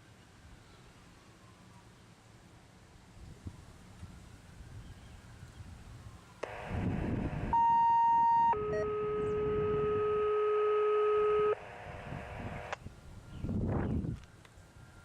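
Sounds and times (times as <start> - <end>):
siren tones over radio: 6.0 - 12.8
radio click: 6.4 - 7.6, 11.1 - 12.8
radio hiss: 6.4 - 12.8.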